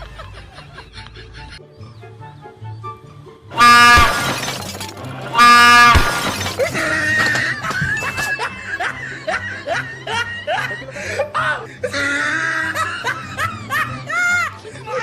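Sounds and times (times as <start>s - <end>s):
background music: 0.0s - 15.0s
train horn blasts: 3.6s - 4.2s, 5.4s - 6.0s.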